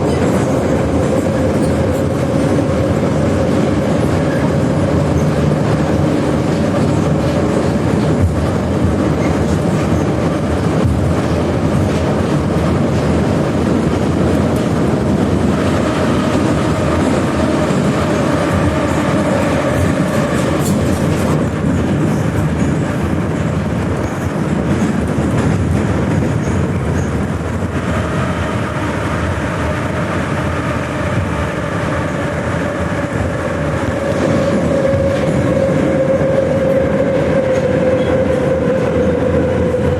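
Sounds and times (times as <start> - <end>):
rail joint clicks: 0.0 - 39.9
train wheels rumbling: 0.0 - 39.9
train whine: 0.0 - 39.9.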